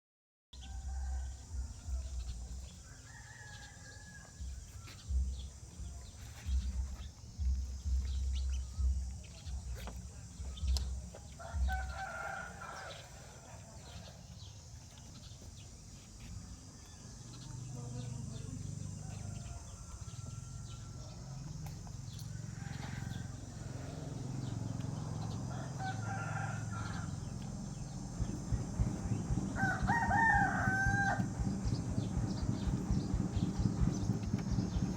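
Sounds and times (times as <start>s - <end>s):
low rumble: 4.4s - 13.3s, 26.6s - 34.9s
low thumps: 27.4s - 34.9s
bird cries: 29.0s - 34.8s.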